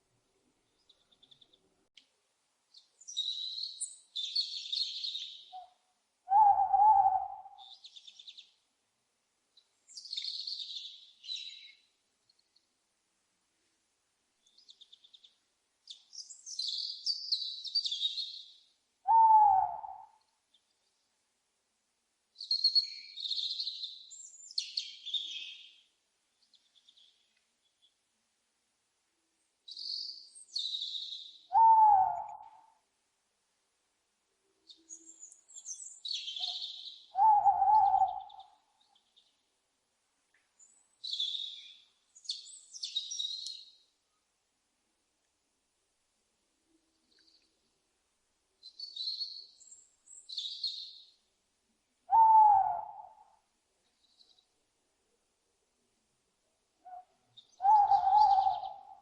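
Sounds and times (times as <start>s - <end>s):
owl lower dipping calls: 31.5s - 32.6s, 36.3s - 38.6s, 52.1s - 53.3s, 56.8s - 59.0s.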